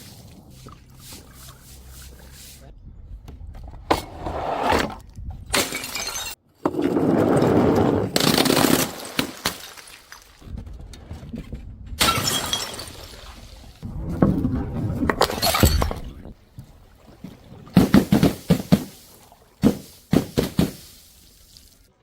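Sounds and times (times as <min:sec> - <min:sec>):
glass bottles smashing: 0:05.5 - 0:06.4, 0:08.2 - 0:10.4, 0:12.0 - 0:13.2, 0:15.4 - 0:16.0.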